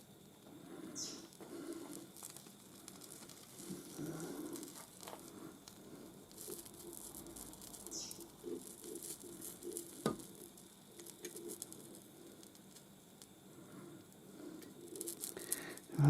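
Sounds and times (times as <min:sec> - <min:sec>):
soldering flux crackling and sizzling: 0:00.0 - 0:16.0.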